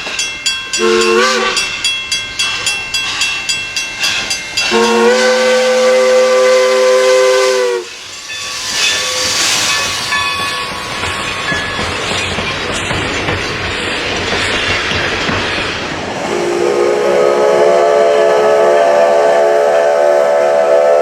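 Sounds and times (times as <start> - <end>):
train clattering over rail joints: 0.0 - 6.0, 7.9 - 16.2
steady hiss: 0.0 - 16.6
train whistle chord blast: 0.8 - 1.7, 4.6 - 10.2, 16.2 - 21.0.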